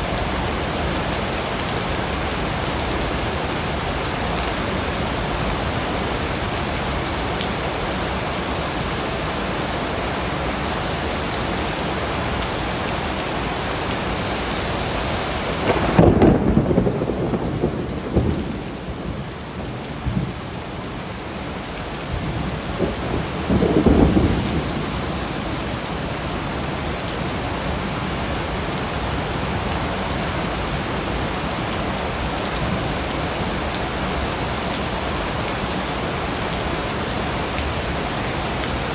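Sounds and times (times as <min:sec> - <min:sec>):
steady rain falling: 0:00.0 - 0:38.9
thunder rumbling: 0:15.3 - 0:29.8.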